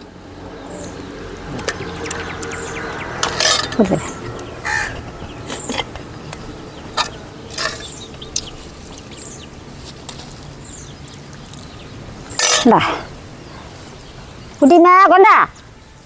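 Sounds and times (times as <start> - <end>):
small birds chirping: 0.0 - 16.0
crows cawing: 4.6 - 5.3.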